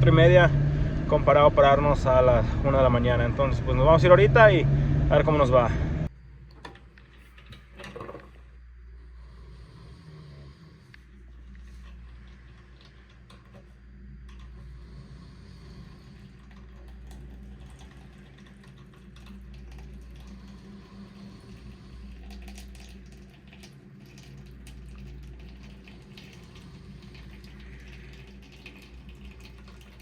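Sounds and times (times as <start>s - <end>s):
truck engine and road rumble: 0.0s - 6.2s.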